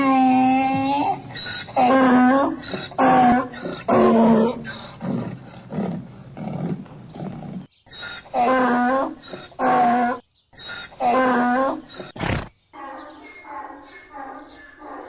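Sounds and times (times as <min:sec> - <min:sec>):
donkey braying: 0:00.0 - 0:15.0
donkey drawing in rough breaths: 0:04.6 - 0:08.3.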